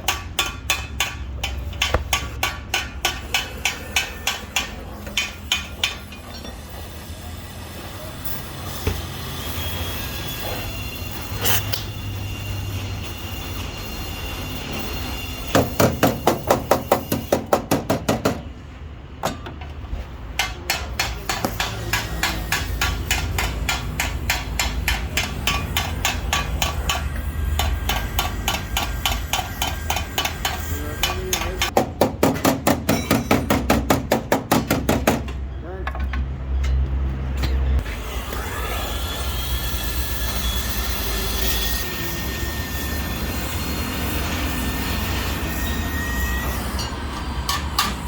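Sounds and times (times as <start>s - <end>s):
hammer striking metal: 0.0s - 6.9s, 13.8s - 18.5s, 20.4s - 37.8s, 44.7s - 48.0s.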